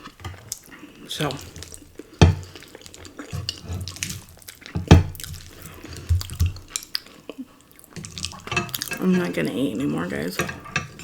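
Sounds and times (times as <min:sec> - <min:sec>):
wet chewing mouth sounds: 0:00.0 - 0:09.1
sharp knocks: 0:02.2 - 0:02.5, 0:04.8 - 0:05.2.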